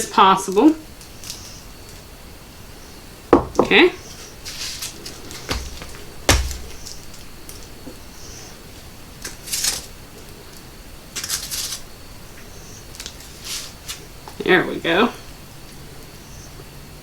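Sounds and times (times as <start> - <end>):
sharp knock: 5.5 - 7.0.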